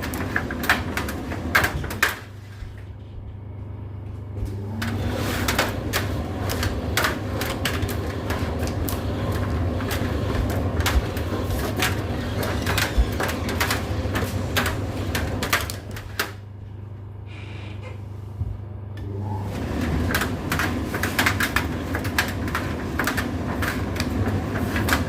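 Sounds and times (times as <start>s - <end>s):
tumble dryer motor hum: 0.0s - 25.0s
clicks and knocks from tumbling drum: 4.8s - 16.4s.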